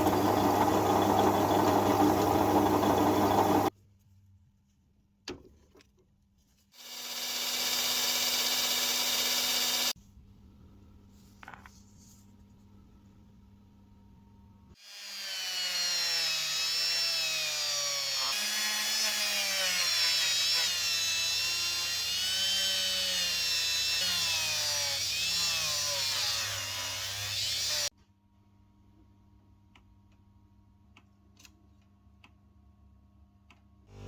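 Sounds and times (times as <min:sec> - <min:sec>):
electric power tool whining: 0:06.8 - 0:09.9.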